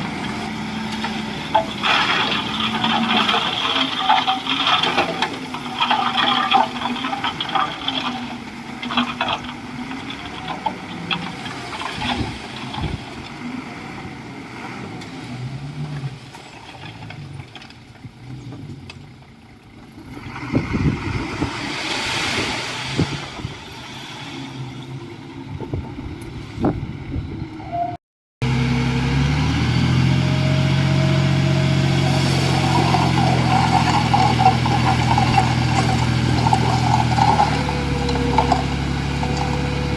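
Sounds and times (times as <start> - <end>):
knocks and scrapes: 0.0 - 13.4, 31.7 - 39.9
construction machinery engine: 0.0 - 20.2, 28.4 - 39.9.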